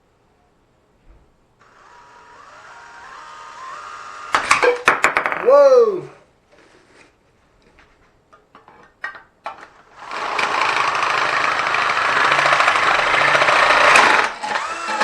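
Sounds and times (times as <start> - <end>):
drill boring through can: 9.9 - 15.0.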